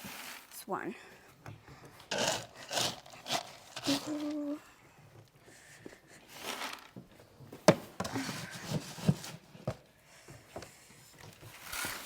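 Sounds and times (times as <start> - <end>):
grain pouring: 0.0 - 0.7, 6.3 - 6.9.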